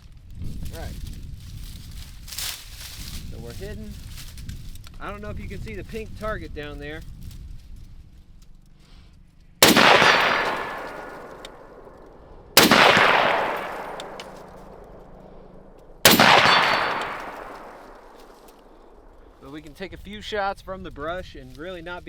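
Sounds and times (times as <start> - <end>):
rifle shots with echo: 9.6 - 19.3.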